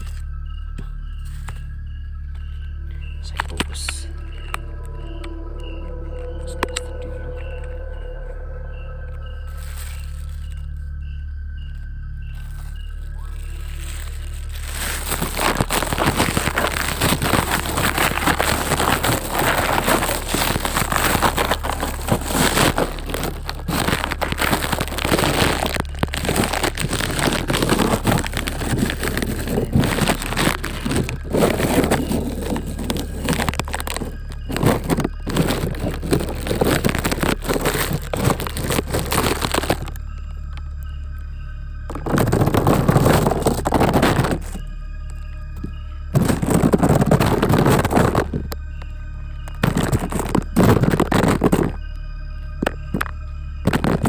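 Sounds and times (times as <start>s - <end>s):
plastic bag crinkling: 9.1s - 10.9s, 12.3s - 40.9s, 41.9s - 44.7s, 45.6s - 51.8s, 52.6s - 54.0s.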